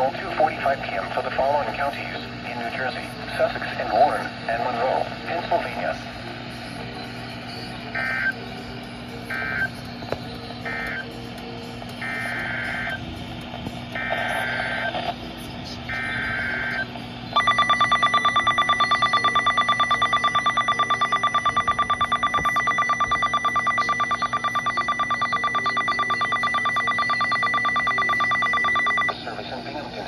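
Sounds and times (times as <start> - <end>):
raspy data tone bursts: 2.2 - 13.2, 13.9 - 29.2
fluttering warning alarm tone: 6.6 - 13.2, 13.9 - 14.9, 15.8 - 29.1.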